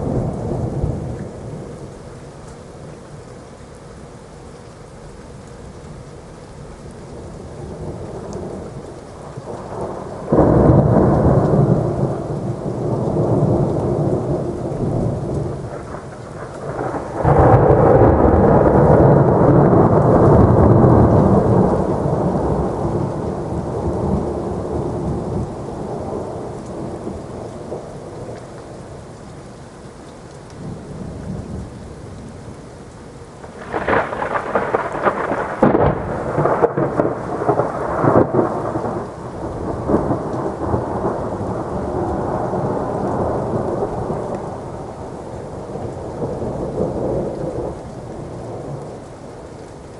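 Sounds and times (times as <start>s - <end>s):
steady rain: 0.0s - 49.9s
thunder rolling: 7.7s - 28.4s, 33.5s - 49.0s.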